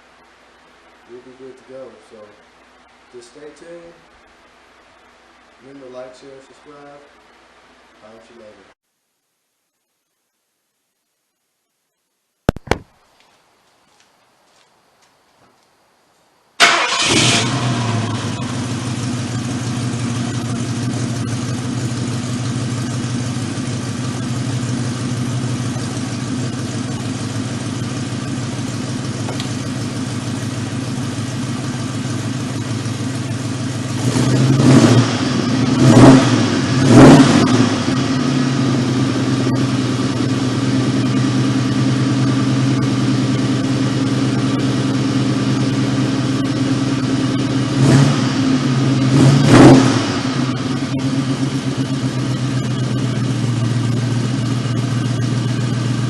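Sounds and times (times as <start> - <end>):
car engine cranking and starting: 16.6 - 56.0
car engine idling: 16.6 - 56.0
car engine revving: 16.6 - 56.0.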